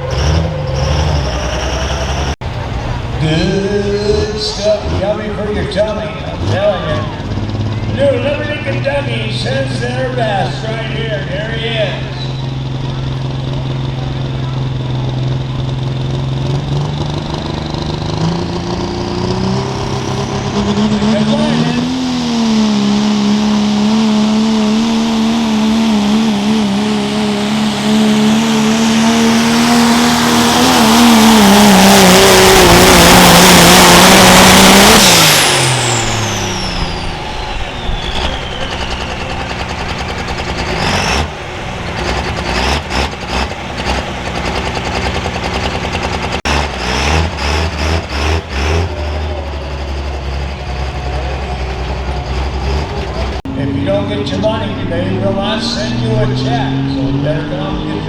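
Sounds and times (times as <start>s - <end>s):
diesel engine under load: 0.0s - 58.0s
low hum: 35.0s - 46.4s
turbo hiss and whistle: 36.6s - 39.9s.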